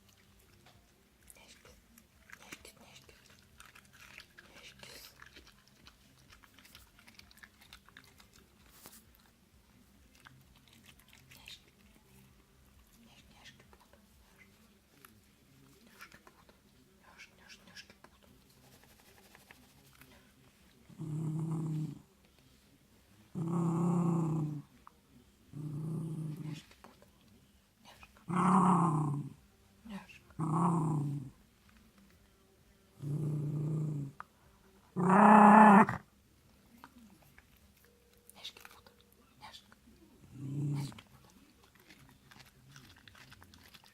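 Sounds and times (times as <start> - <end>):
dog chewing cucumber: 1.7 - 9.4, 10.0 - 12.3, 40.3 - 43.9
dog growling: 20.8 - 22.1, 23.3 - 24.8, 25.5 - 26.8, 28.2 - 29.4, 30.3 - 31.4, 33.0 - 34.2, 34.9 - 36.0, 40.2 - 43.9.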